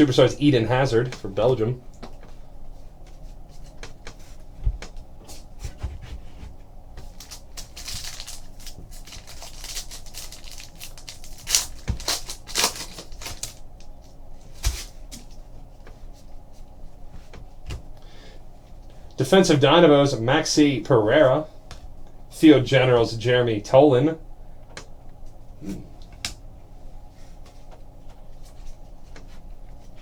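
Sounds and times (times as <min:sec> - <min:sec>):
card packs rustling and crinkling: 0:03.6 - 0:15.4.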